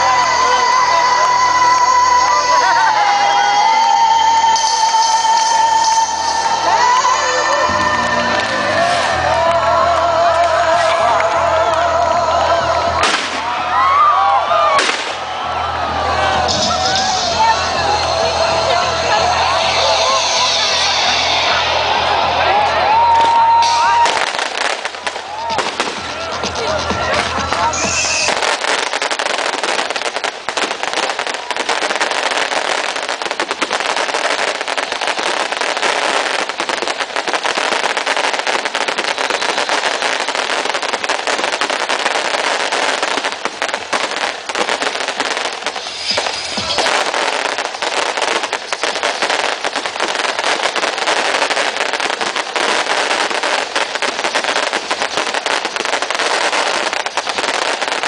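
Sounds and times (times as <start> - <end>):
fireworks crackling: 0.0 - 58.0.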